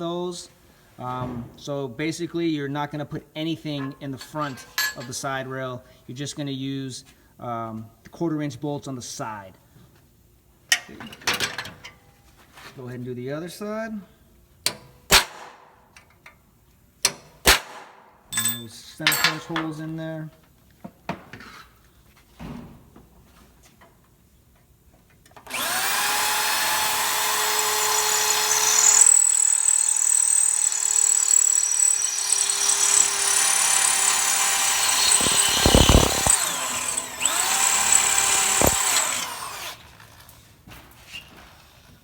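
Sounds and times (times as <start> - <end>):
power drill whining: 25.4 - 40.2.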